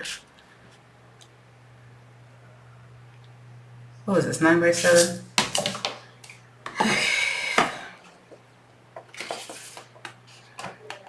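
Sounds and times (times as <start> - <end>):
paper rustling: 9.1 - 10.6
paper scraping slide: 9.2 - 9.9.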